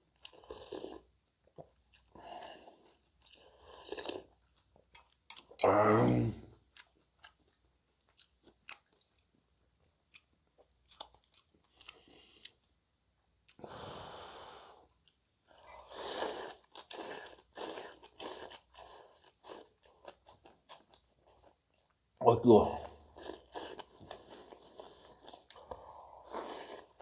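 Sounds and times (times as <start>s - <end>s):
chewing and crunching: 6.7s - 12.7s, 15.0s - 22.0s, 23.0s - 27.0s.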